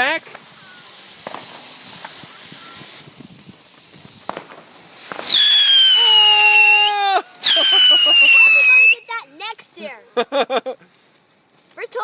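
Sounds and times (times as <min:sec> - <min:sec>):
firework crackle: 0:00.0 - 0:12.0
shrill firework whistle: 0:00.6 - 0:03.1, 0:05.1 - 0:09.1
small firework pop: 0:01.2 - 0:06.2.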